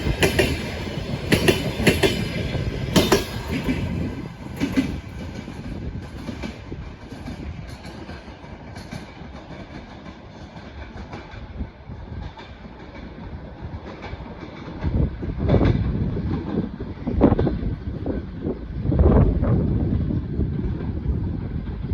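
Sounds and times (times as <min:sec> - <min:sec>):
train wheels clattering: 0:00.0 - 0:18.3.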